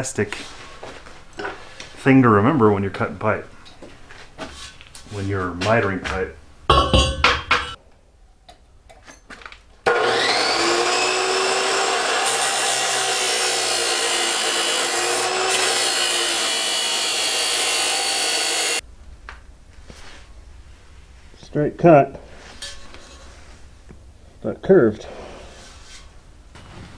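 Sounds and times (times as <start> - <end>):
power saw cutting steel pipe: 9.9 - 18.8.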